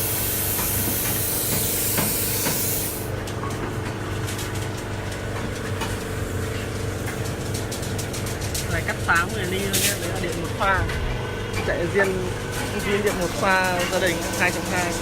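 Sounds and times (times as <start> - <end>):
plasma cutter arc hissing: 0.0 - 3.1
machine hum: 0.0 - 15.0.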